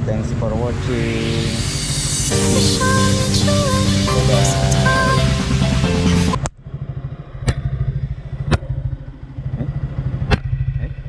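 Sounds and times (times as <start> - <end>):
music: 1.4 - 6.5
motorcycle engine idling: 4.4 - 11.0.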